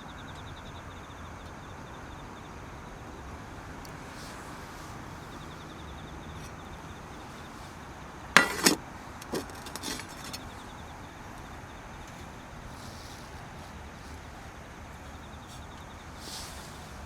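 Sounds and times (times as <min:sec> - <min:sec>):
hard objects clattering: 0:08.4 - 0:10.4.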